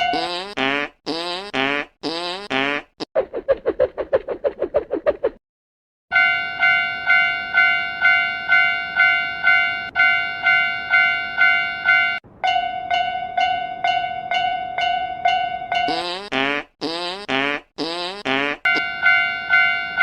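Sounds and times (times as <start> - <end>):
railroad crossing bell dinging: 6.1 - 15.9, 18.7 - 20.0
warbling crossing bell: 6.1 - 15.9, 18.7 - 20.0.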